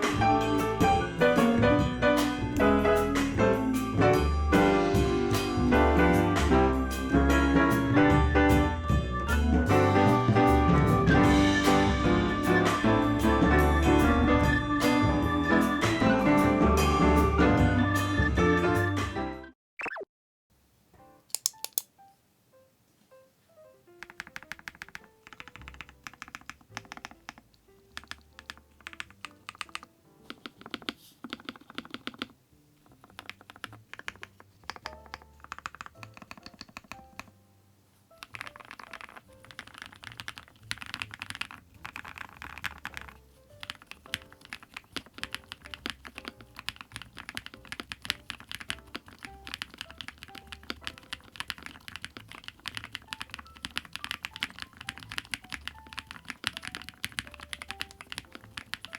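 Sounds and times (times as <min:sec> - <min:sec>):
soft background music: 0:00.0 - 0:19.5, 0:21.0 - 0:58.9
mechanical keyboard key clacks: 0:21.3 - 0:21.9, 0:24.0 - 0:27.4, 0:28.0 - 0:32.3, 0:33.0 - 0:37.3, 0:38.2 - 0:58.9.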